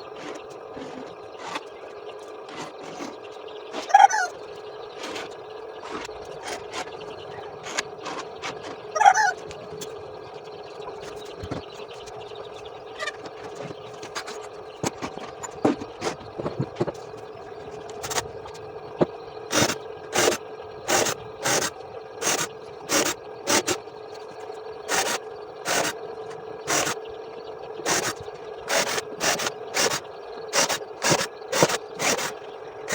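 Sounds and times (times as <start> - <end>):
steady hum: 0.0 - 32.9
rhythmic scraping strokes: 10.8 - 27.0, 27.8 - 32.9.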